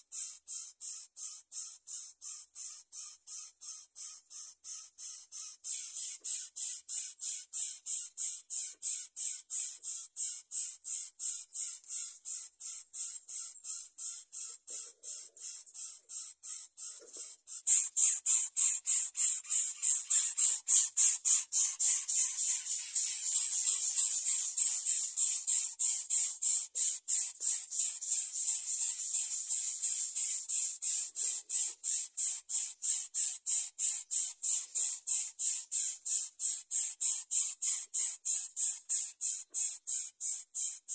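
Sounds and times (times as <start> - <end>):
nestlings begging with hissing rasps: 0.2 - 40.8.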